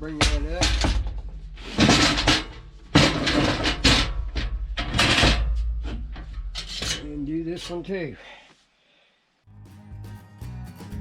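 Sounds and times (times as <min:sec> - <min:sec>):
metal ramp clattering and scraping: 0:00.0 - 0:07.8.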